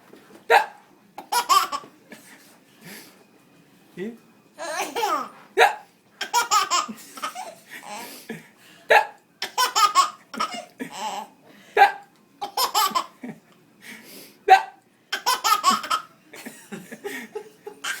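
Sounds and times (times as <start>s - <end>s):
adult fake hiccups: 0.5s - 0.8s, 5.6s - 5.9s, 14.5s - 14.8s
baby laughing: 1.2s - 1.9s, 6.2s - 8.0s, 9.4s - 11.3s, 12.4s - 13.2s, 15.1s - 16.1s.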